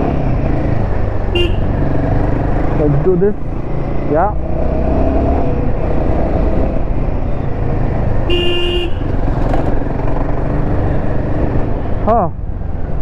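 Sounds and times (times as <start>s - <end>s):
motorcycle engine and road noise: 0.0s - 13.0s
vehicle horn honking: 1.3s - 1.8s, 8.3s - 9.2s.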